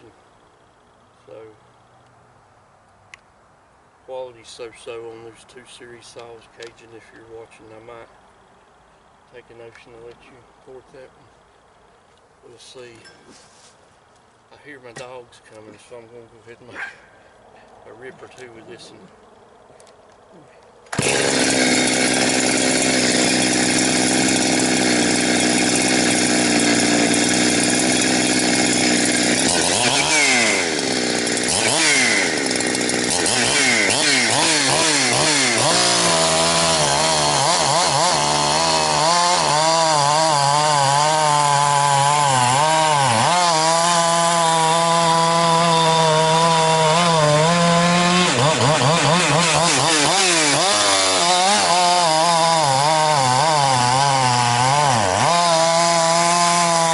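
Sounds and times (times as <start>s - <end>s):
chainsaw running: 20.8s - 56.9s.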